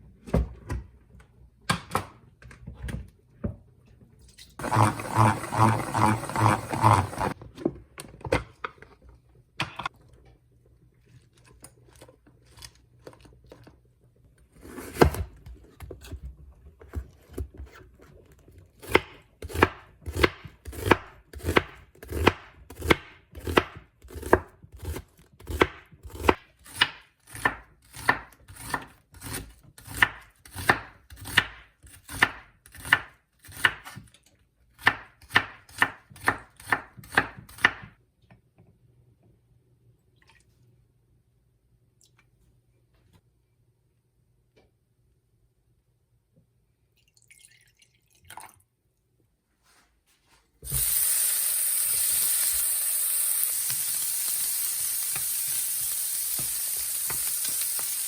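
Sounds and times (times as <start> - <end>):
knife chopping on cutting board: 18.8 - 34.1, 34.8 - 37.9.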